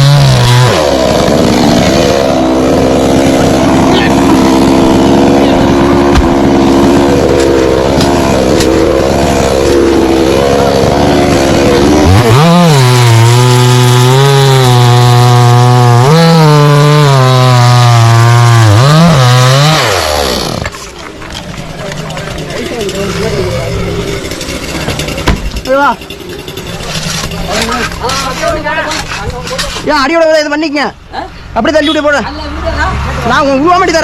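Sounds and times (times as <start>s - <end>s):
chainsaw cutting wood: 0.0s - 23.3s, 23.9s - 29.7s.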